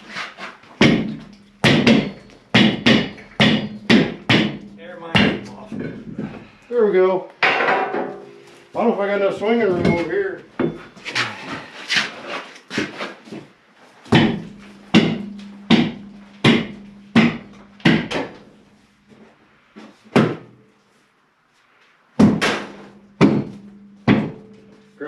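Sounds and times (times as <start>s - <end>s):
hammer blows on metal: 0.8s - 5.6s.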